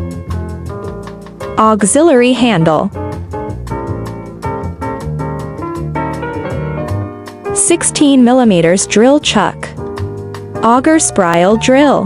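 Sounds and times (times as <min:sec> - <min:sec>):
instrumental music with beat: 0:00.0 - 0:01.6, 0:03.0 - 0:07.7, 0:09.7 - 0:11.9.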